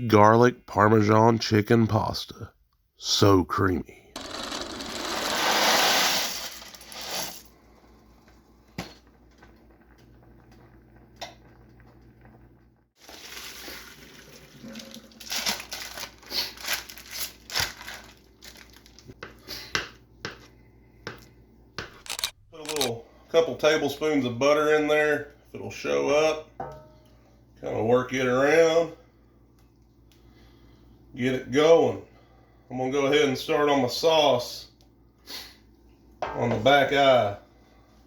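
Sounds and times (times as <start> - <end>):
sharp clicks and metallic clinks: 21.9 - 22.9.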